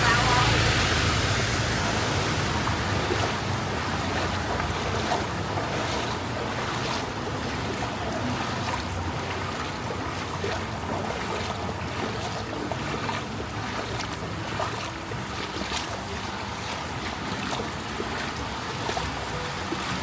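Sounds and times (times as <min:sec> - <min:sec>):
steady low rumble: 0:00.0 - 0:08.3
floodwater sloshing and splashing: 0:00.0 - 0:20.0.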